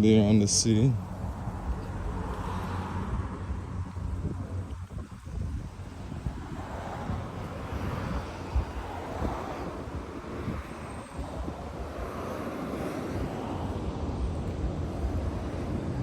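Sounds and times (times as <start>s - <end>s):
road traffic: 0.0s - 16.0s
wind buffeting microphone: 0.0s - 16.0s.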